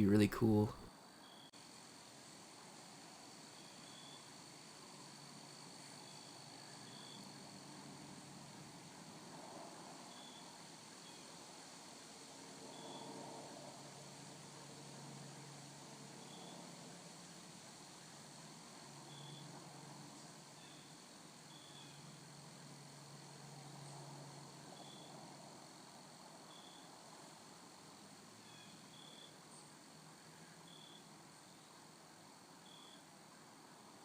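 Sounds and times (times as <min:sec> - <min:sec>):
steady faint hiss: 0:00.0 - 0:00.9.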